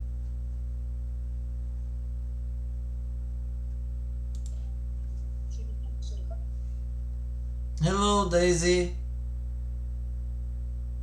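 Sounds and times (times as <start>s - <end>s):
low electrical hum: 0.0s - 11.0s
faint clicks: 3.7s - 5.3s.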